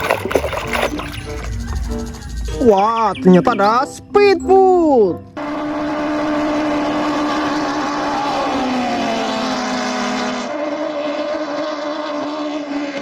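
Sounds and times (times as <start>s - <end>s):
speedboat engine drone: 0.0s - 2.9s, 5.2s - 13.0s.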